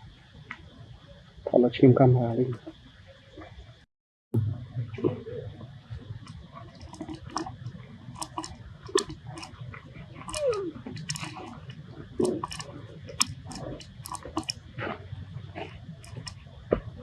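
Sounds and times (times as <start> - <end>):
people chewing food: 5.0 - 17.0.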